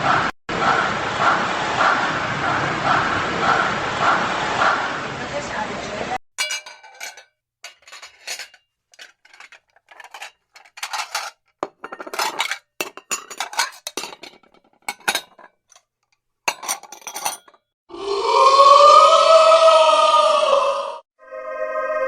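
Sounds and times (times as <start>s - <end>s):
dishes and cutlery clinking: 6.4s - 15.8s, 16.5s - 17.6s.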